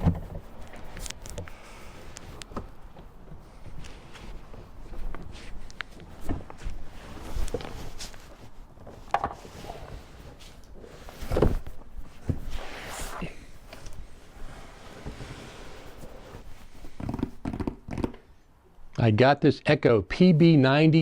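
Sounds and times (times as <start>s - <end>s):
thumps and knocks: 0.0s - 0.6s, 17.0s - 18.3s
handling noise: 0.0s - 14.2s.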